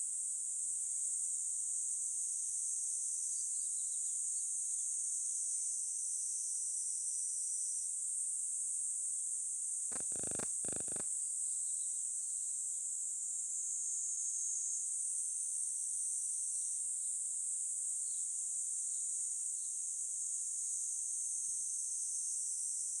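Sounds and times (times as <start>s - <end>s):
insects trilling: 9.9s - 11.0s.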